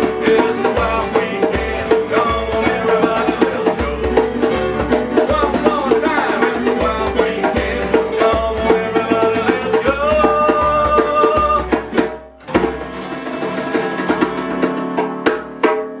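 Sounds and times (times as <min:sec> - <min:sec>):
acoustic guitar: 0:00.0 - 0:16.0
drum beat: 0:00.0 - 0:16.0.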